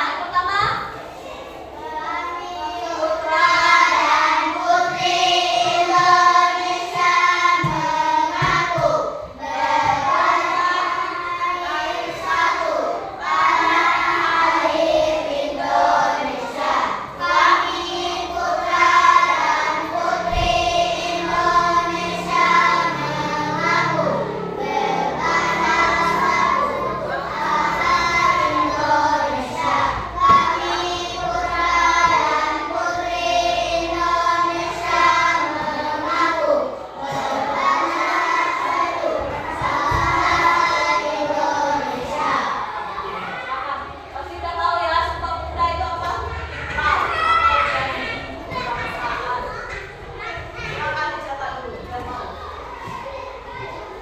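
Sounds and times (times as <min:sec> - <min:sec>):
children singing in unison: 0:01.1 - 0:44.2.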